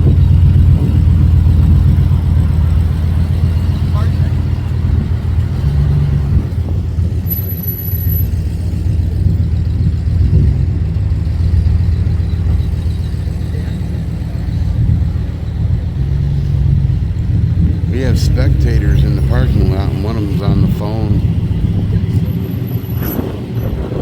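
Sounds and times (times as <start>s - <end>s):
low rumble: 0.0s - 24.0s.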